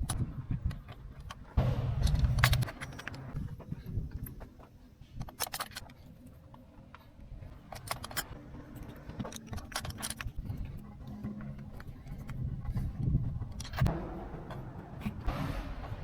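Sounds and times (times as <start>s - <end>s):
low steady rumble: 1.5s - 4.9s, 10.2s - 16.0s.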